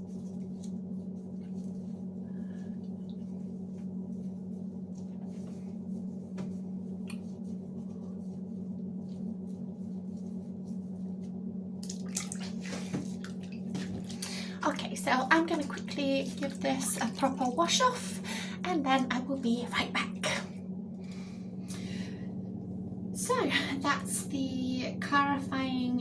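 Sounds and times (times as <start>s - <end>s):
low hum: 0.0s - 26.0s
water splashing: 11.8s - 17.6s.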